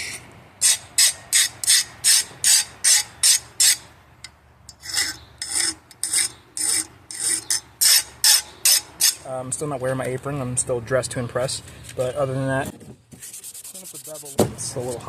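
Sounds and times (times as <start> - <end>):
file scraping steel blade: 0.0 - 3.8, 4.7 - 9.2.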